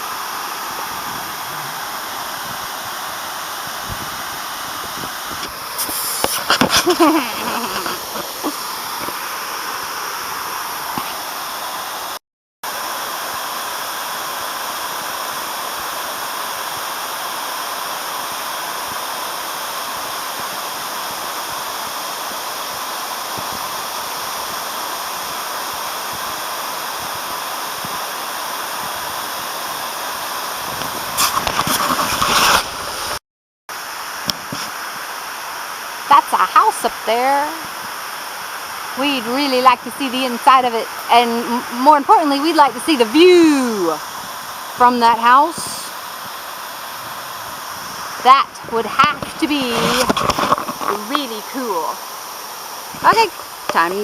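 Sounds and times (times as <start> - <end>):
loud crackling noise: 0.0 - 9.4, 30.7 - 33.2, 48.1 - 51.5
waterfall roaring: 0.0 - 33.2, 33.8 - 54.0.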